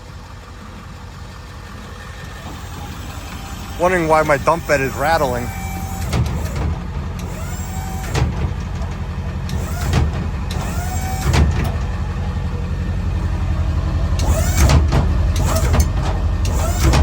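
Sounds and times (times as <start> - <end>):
diesel engine running: 0.0 - 17.0
metal insert rattling and clanking: 5.6 - 12.2.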